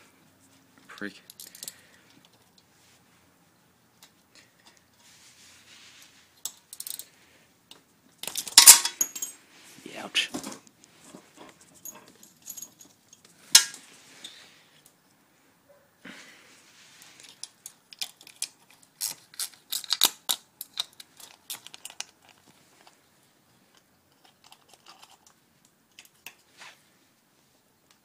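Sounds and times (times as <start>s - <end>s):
metal tools clinking: 1.2s - 1.9s, 6.4s - 7.1s, 8.2s - 9.4s, 11.6s - 14.4s.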